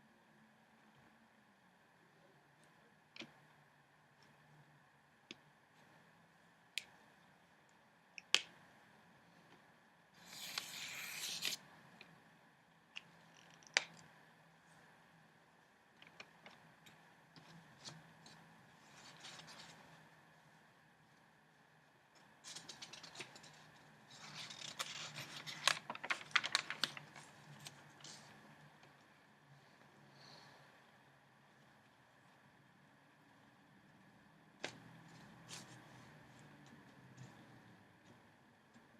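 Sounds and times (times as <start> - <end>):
paper rustling: 10.2 - 11.6, 22.4 - 28.3
paper crinkling and clicking: 22.4 - 28.3.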